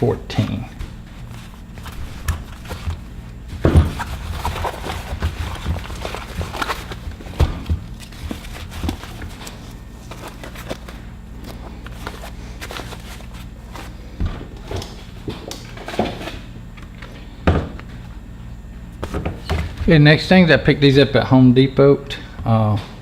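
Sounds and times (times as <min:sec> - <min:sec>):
low electrical hum: 0:00.0 - 0:23.0
tools and packaging handled: 0:01.2 - 0:14.0.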